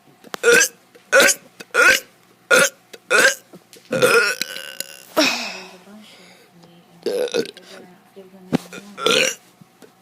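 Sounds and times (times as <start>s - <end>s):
child burping: 0.4s - 5.7s, 7.0s - 7.6s, 9.0s - 9.4s.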